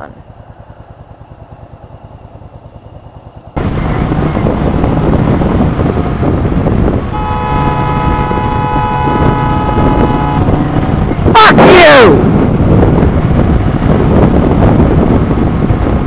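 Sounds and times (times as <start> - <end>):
motorcycle engine idling: 0.0 - 11.1
engine and wind noise: 0.0 - 16.0
vehicle horn honking: 7.1 - 11.0.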